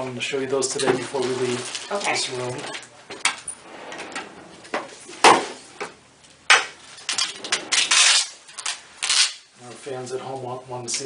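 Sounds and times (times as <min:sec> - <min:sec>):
rustling and rubbing: 0:06.8 - 0:10.0.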